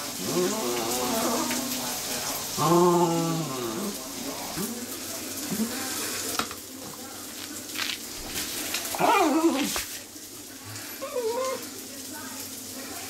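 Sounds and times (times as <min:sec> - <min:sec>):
dog whining: 0:00.2 - 0:01.8, 0:08.9 - 0:09.8, 0:11.0 - 0:11.7.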